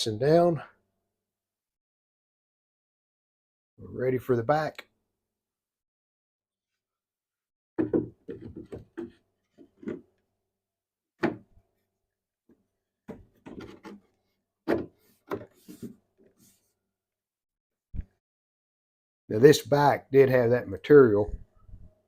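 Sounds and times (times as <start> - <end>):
knocks and rubs on wooden panel: 7.8 - 10.1.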